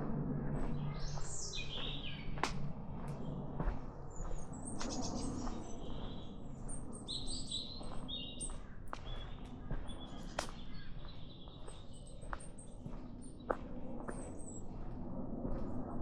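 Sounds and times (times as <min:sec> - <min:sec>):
low steady rumble: 0:00.0 - 0:06.6
songbirds chirping: 0:00.5 - 0:15.6.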